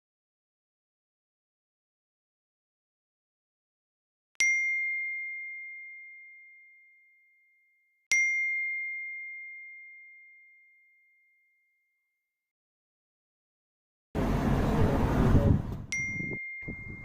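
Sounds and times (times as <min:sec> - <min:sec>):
bell dings: 0:04.4 - 0:12.0, 0:15.9 - 0:17.0.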